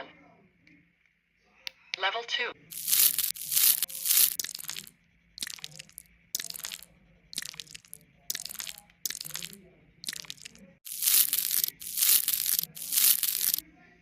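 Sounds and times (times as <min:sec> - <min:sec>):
crunchy sound effect bursts: 0:02.7 - 0:06.8, 0:07.4 - 0:13.6.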